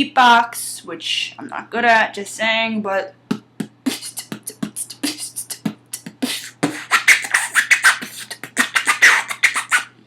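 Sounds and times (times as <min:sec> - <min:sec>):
vocal record scratch imitation: 0:03.3 - 0:09.9
person beatboxing: 0:03.3 - 0:10.0.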